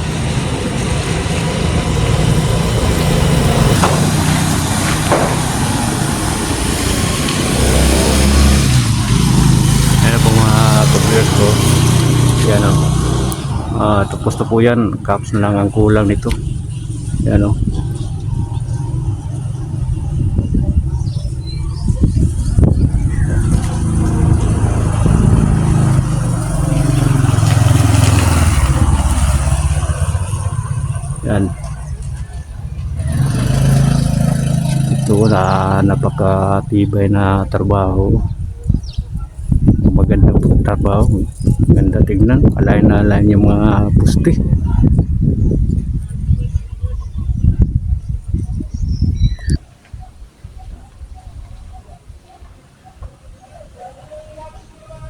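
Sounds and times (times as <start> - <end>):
heavy engine running: 0.0 - 8.1
loud engine revving: 0.0 - 20.5, 22.1 - 37.7
outdoor noise: 0.0 - 55.0.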